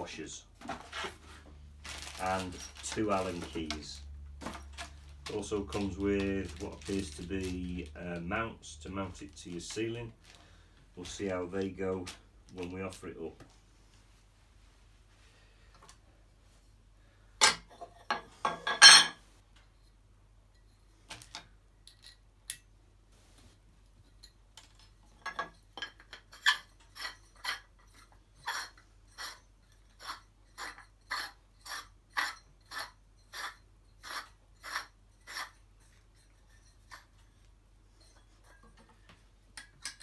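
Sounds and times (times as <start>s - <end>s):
short metallic scrapes: 26.5s - 37.2s.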